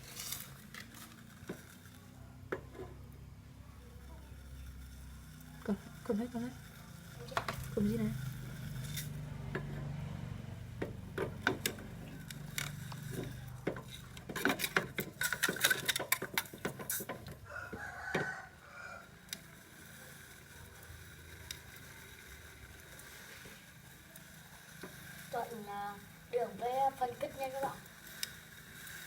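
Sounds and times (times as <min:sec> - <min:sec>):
spoon scraping metal pot: 0:11.2 - 0:17.4.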